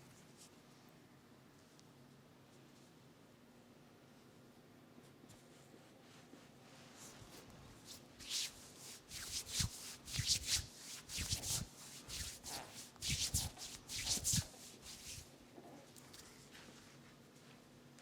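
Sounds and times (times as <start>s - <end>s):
hands rubbing hair: 6.1s - 15.3s.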